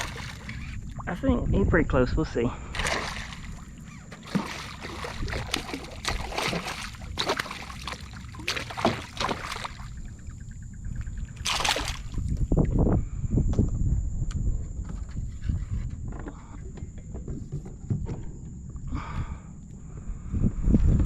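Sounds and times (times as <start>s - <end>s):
water lapping against kayak hull: 0.0s - 1.3s, 2.6s - 12.8s.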